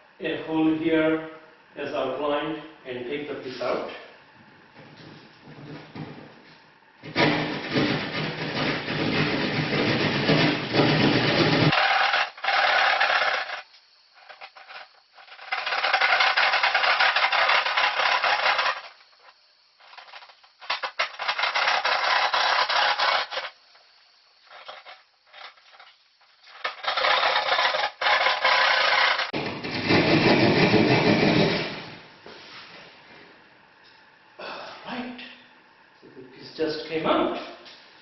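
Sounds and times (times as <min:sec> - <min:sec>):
saw cutting through drywall: 0:07.1 - 0:13.6, 0:15.7 - 0:18.8, 0:26.7 - 0:32.0.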